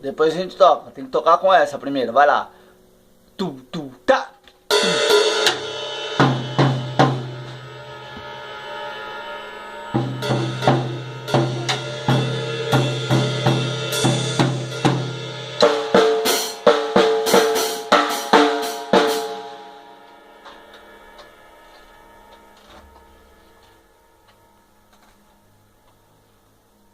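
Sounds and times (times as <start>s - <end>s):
child playing drum kit: 4.7s - 23.8s.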